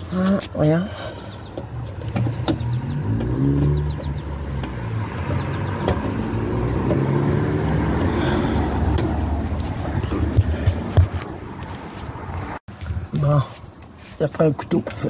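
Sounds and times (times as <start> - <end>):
vehicle engine revving: 1.5 - 11.2.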